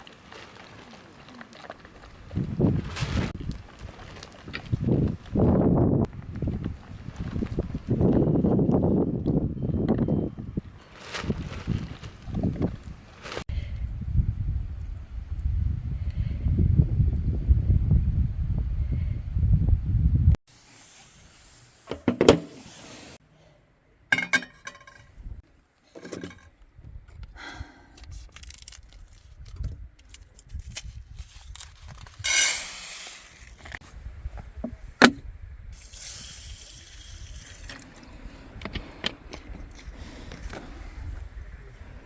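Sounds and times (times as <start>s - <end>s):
wind on microphone: 1.9s - 20.4s, 26.7s - 32.8s, 33.4s - 42.0s
cookware clinking and scraping: 24.1s - 25.1s, 26.0s - 26.5s.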